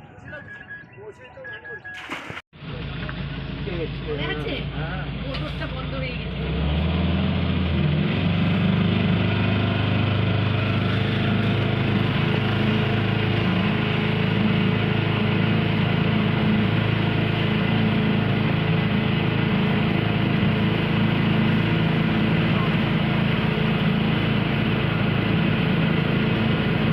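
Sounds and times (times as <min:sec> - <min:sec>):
motorboat engine running: 0:07.8 - 0:26.9.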